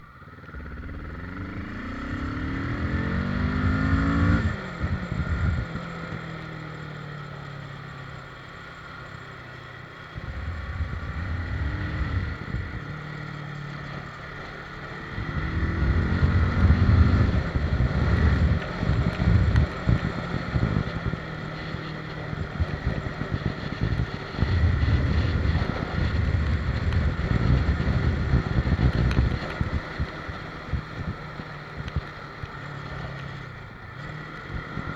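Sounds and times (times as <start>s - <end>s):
motorcycle engine accelerating: 0.0s - 34.9s
wind noise on microphone: 10.2s - 13.4s, 15.1s - 32.0s.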